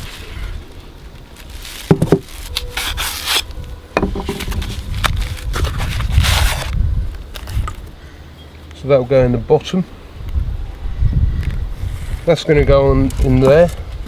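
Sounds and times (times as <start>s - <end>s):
scraping and rubbing: 0.0s - 6.8s.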